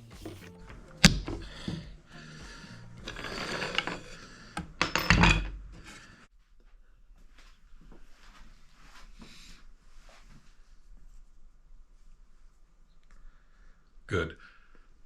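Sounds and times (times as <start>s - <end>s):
scraping and rustling: 0.0s - 6.3s.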